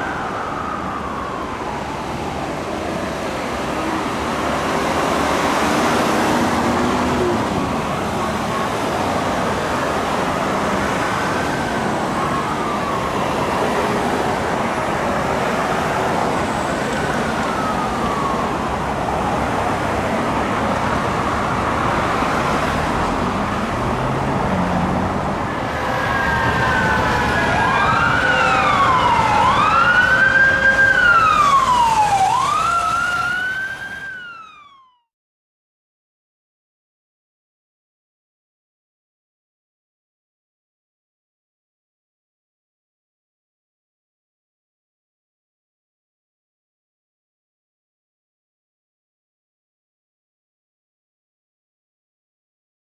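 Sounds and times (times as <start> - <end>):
engine and road noise: 0.0 - 34.9
fire truck siren wailing: 0.0 - 35.1.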